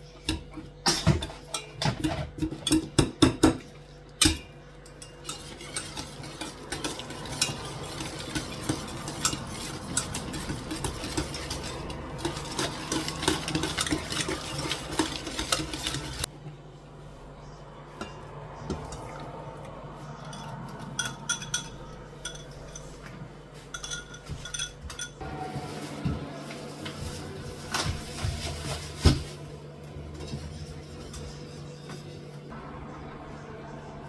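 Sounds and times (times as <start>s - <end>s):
cutlery and dishes clinking: 0.2s - 16.3s, 20.2s - 25.2s.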